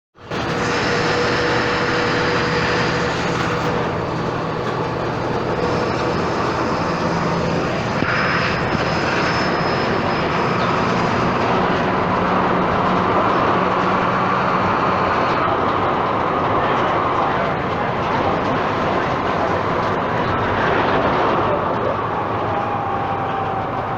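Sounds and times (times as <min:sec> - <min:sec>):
bus engine running: 0:00.2 - 0:23.9.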